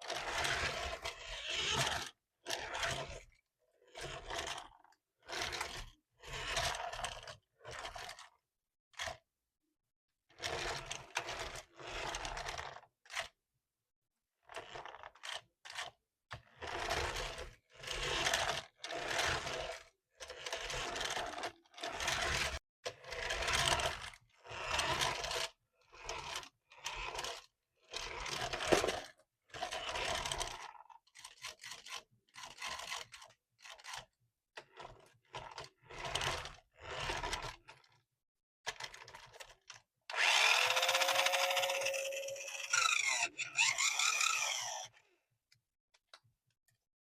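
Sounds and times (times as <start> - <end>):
scraping and rubbing strokes: 40.2 - 44.9.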